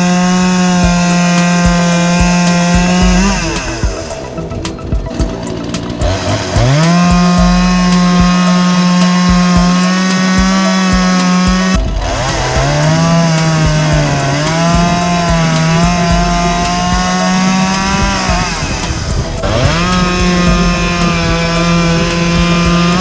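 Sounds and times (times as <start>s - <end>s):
chainsaw cutting wood: 0.0s - 4.1s, 5.8s - 23.0s.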